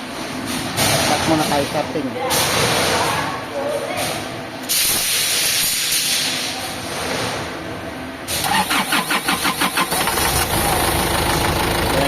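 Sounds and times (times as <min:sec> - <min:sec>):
diesel engine cranking and starting: 0:08.4 - 0:12.0.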